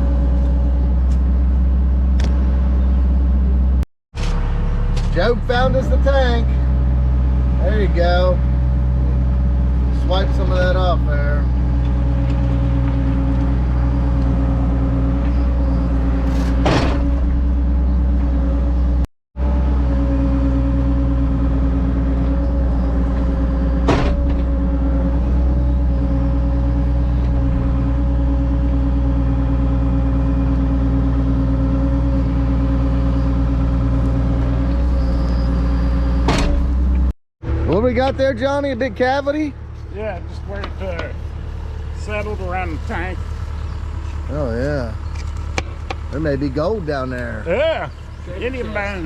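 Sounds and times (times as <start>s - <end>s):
excavator diesel engine running: 0.0s - 49.0s
sharp knocks: 23.8s - 24.5s.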